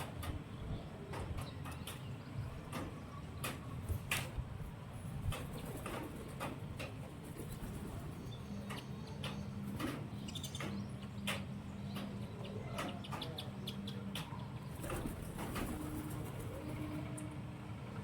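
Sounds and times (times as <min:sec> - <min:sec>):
birds chirping: 0:07.2 - 0:17.3.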